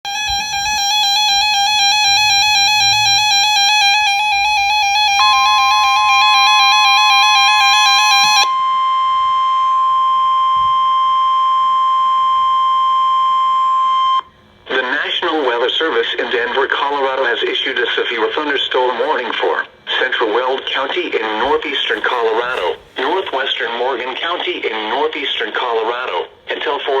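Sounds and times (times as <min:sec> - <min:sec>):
pulsing two-tone alarm: 0:00.0 - 0:14.3
steady single-pitched tone: 0:00.1 - 0:14.2
faint higher tone: 0:04.6 - 0:06.4.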